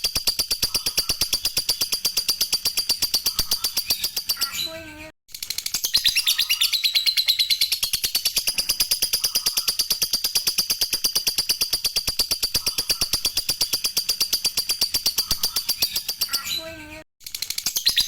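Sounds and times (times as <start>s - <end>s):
lovebird chattering: 5.9s - 16.5s.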